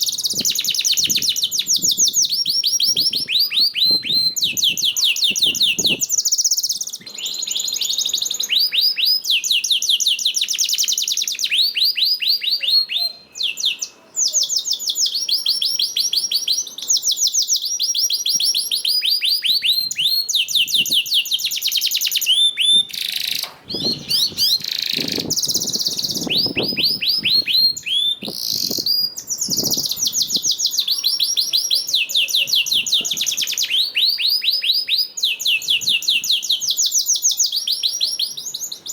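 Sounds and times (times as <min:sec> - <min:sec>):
canary singing trills: 0:00.0 - 0:38.9.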